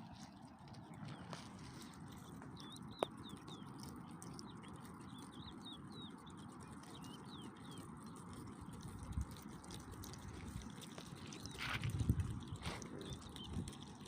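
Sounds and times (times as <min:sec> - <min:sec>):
faint steady background noise: 0:00.0 - 0:14.0
birds chirping: 0:00.2 - 0:08.8, 0:10.3 - 0:14.0.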